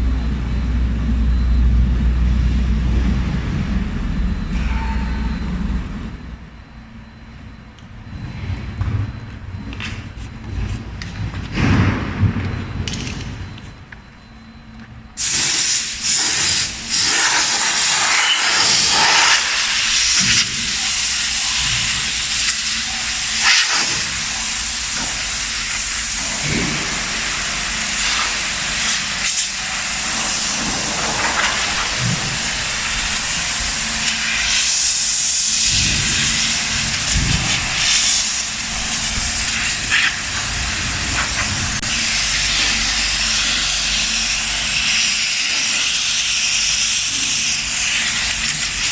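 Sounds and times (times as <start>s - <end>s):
cnc router cutting: 16.6s - 48.9s.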